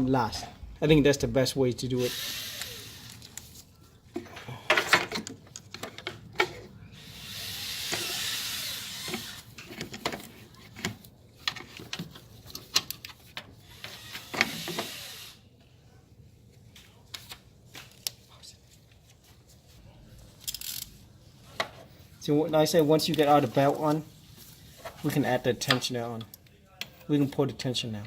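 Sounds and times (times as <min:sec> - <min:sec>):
clicks and knocks of handling: 0:09.6 - 0:13.5
rustling scrapes: 0:22.8 - 0:25.4.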